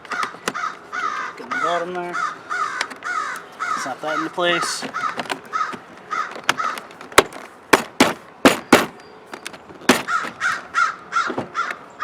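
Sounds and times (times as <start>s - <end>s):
plastic clicks and knocks: 4.8s - 10.5s.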